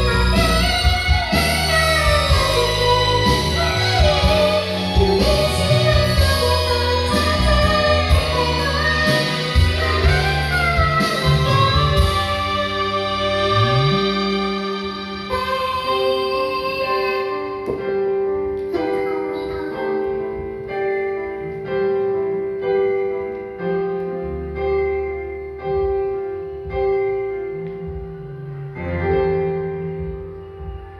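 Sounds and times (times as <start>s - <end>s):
instrumental backing track: 0.0s - 30.9s
held note: 13.0s - 15.3s.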